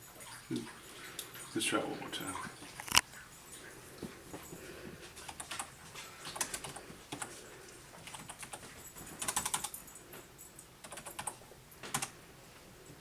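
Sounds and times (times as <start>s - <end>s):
computer keyboard keys pressed: 5.3s - 7.3s, 8.0s - 9.8s, 10.8s - 12.1s.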